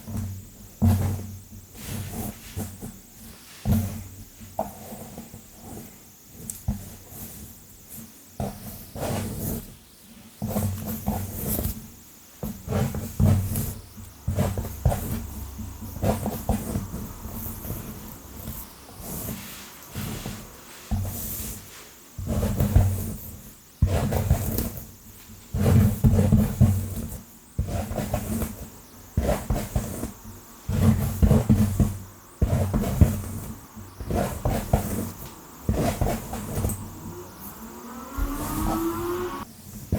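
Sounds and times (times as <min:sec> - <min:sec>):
handling thuds: 0:25.5 - 0:37.5
fingernails scratching through hair: 0:32.4 - 0:37.6.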